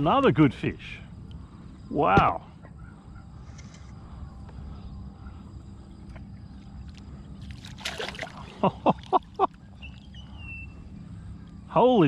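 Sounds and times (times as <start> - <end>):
low steady rumble: 0.0 - 12.0
fish splashing at surface: 7.4 - 8.6.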